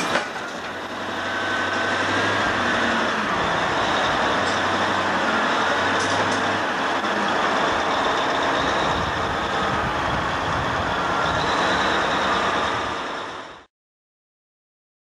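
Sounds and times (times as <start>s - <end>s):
heavy machine running: 0.0s - 13.7s.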